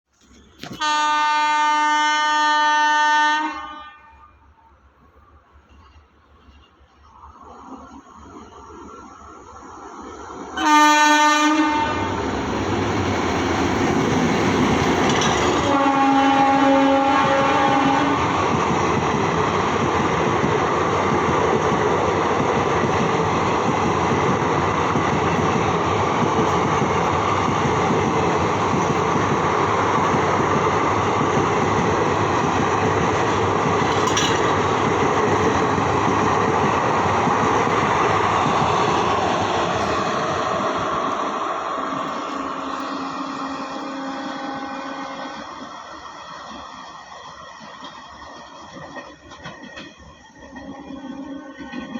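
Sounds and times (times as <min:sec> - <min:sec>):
train horn blasts: 0:00.7 - 0:04.6, 0:10.6 - 0:12.2, 0:15.5 - 0:18.4, 0:42.6 - 0:45.5
train coaches clattering past: 0:04.8 - 0:51.9.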